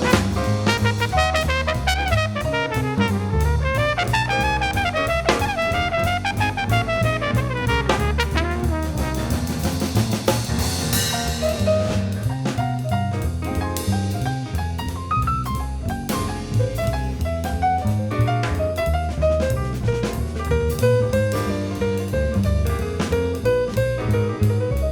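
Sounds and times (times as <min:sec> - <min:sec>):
brass horns: 0:00.0 - 0:11.0
bass: 0:00.0 - 0:24.9
drum kit: 0:00.0 - 0:24.9
upbeat jazz music: 0:00.0 - 0:24.9.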